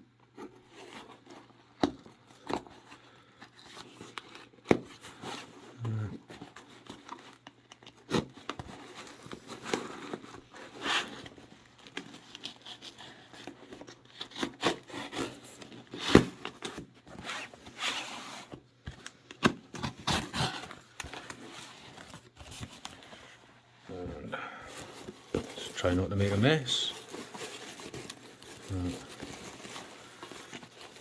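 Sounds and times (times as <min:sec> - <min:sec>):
knife tearing open package: 0:10.8 - 0:16.8.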